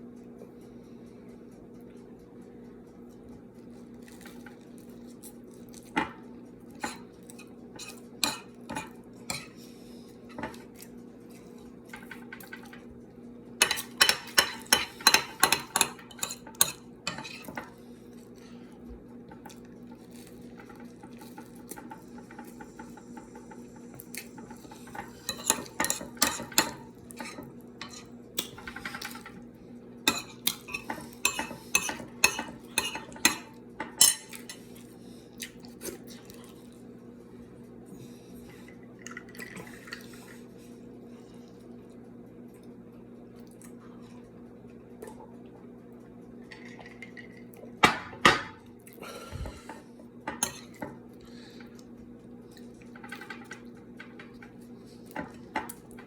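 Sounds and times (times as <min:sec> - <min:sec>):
steady low hum: 0:00.0 - 0:56.0
cutlery clinking on a plate: 0:13.6 - 0:17.7, 0:24.4 - 0:29.4, 0:30.1 - 0:34.6.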